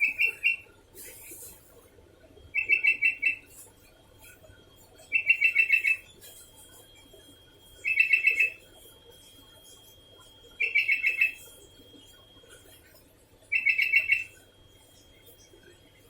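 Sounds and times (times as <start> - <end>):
bulbul calling: 0.0 - 0.6, 2.6 - 3.4, 5.1 - 6.0, 7.8 - 8.6, 10.6 - 11.4, 13.5 - 14.3.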